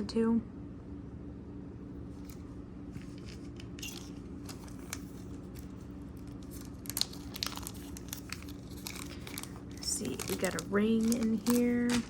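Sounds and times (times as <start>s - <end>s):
steady low hum: 0.0s - 12.0s
jewelry clicking and clinking: 3.1s - 5.0s.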